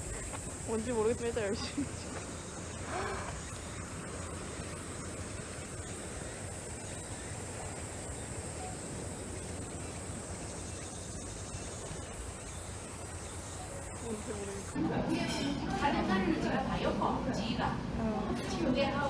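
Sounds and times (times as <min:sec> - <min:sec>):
high-pitched insect buzz: 0:00.0 - 0:14.8.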